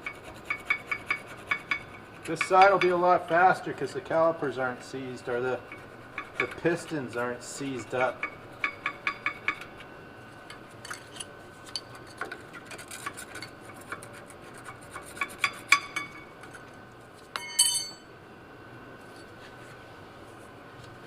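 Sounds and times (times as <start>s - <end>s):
metal tools clinking and knocking: 17.4s - 18.1s
ringing metallic clink: 17.4s - 18.1s.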